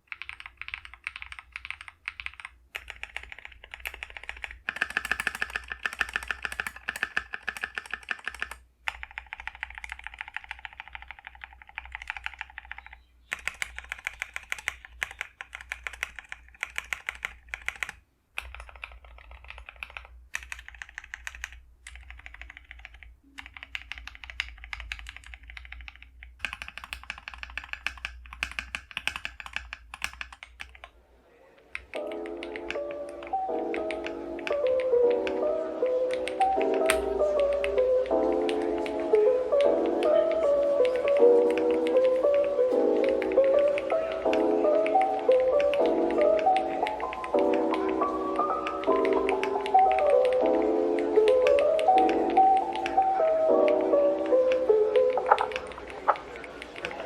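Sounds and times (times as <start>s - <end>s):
mechanical keyboard typing: 0.0s - 30.9s, 31.7s - 57.0s
music: 32.0s - 56.4s.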